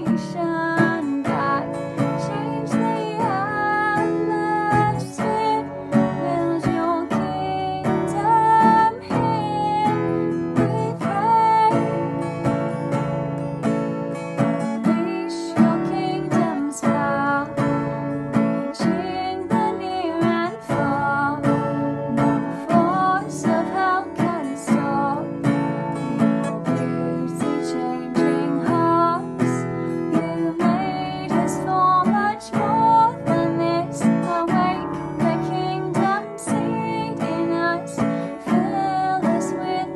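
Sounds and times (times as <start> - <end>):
acoustic guitar strumming: 0.0 - 39.9.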